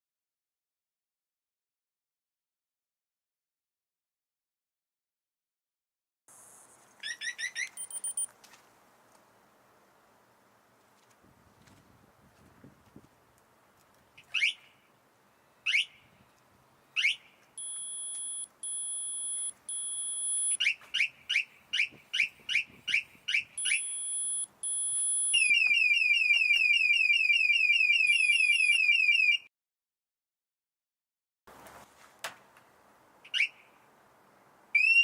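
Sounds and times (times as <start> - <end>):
alarm chirps: 7.0 - 8.3, 17.0 - 29.4
two-tone alarm beeps: 7.6 - 8.3, 17.6 - 20.7, 23.6 - 26.8
fast warbling siren: 22.5 - 29.5.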